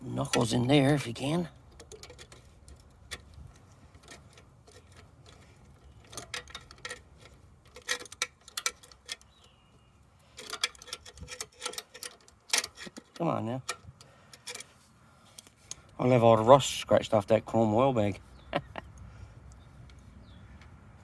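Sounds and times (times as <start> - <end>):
tools clicking and tapping metal: 0.2 - 9.6, 10.2 - 14.7.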